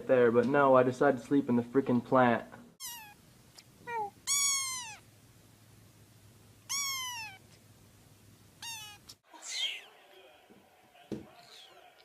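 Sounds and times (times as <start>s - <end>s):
cat meowing: 2.8s - 3.2s, 3.9s - 5.0s, 6.7s - 7.5s, 8.6s - 9.8s.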